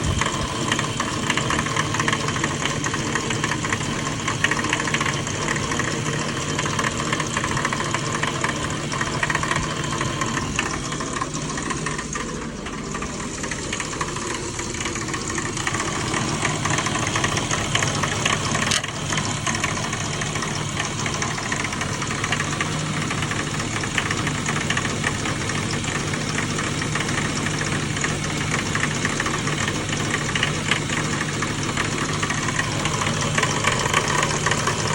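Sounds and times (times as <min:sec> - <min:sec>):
car engine idling: 0:00.0 - 0:34.9
engine clanking and knocking: 0:00.0 - 0:34.9.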